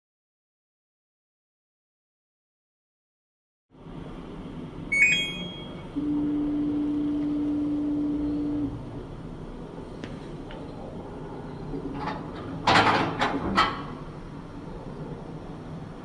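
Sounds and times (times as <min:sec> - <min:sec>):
washing machine low hum: 0:03.7 - 0:16.0
washing machine beep: 0:04.9 - 0:08.7.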